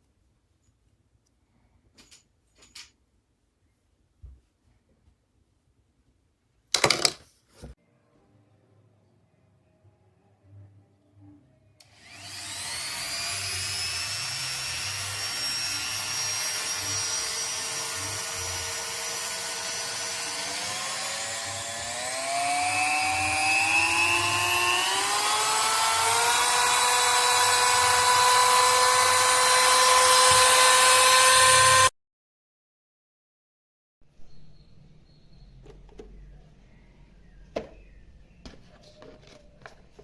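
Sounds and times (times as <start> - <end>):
rotary tool motor whine: 11.9 - 31.9.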